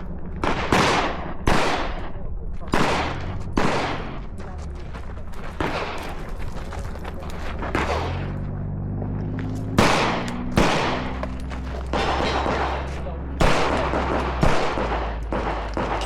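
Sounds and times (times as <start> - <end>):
airsoft pistol shots: 0.3 - 4.3, 9.8 - 11.2, 11.9 - 16.0.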